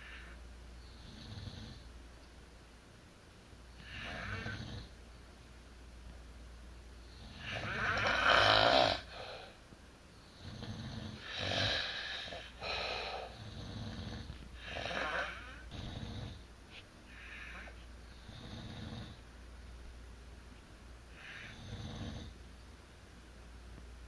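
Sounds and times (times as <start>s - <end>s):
people snoring: 3.8s - 4.9s, 7.2s - 9.5s, 10.4s - 16.4s, 17.2s - 19.2s.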